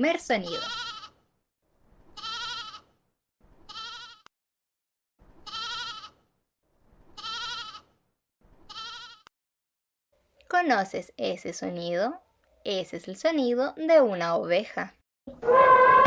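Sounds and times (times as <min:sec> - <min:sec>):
sheep bleating: 0:00.5 - 0:01.2, 0:02.2 - 0:02.9, 0:03.7 - 0:04.3, 0:05.4 - 0:06.2, 0:07.2 - 0:07.9, 0:08.7 - 0:09.3.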